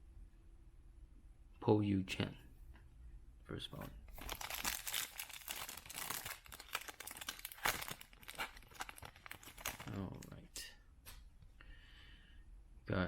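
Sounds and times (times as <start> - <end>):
foil wrapper tearing and crinkling: 4.1 - 10.3.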